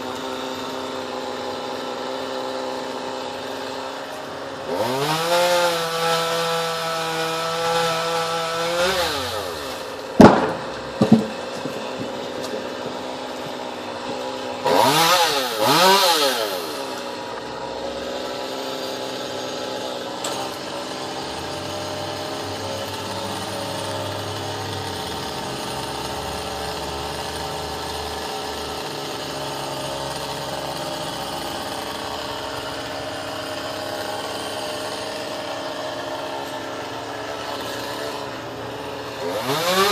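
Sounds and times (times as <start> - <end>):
two-stroke chainsaw revving and idling: 0.0 - 39.9
sharp loud knocks: 10.2 - 13.0.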